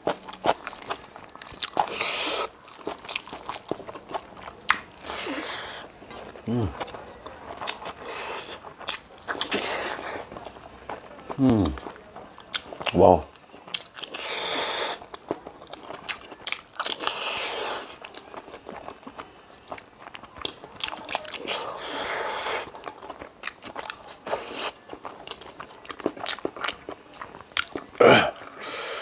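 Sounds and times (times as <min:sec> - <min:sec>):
crunchy biting: 0:00.0 - 0:11.9, 0:12.5 - 0:19.8
wet chewing mouth clicks: 0:00.0 - 0:29.0.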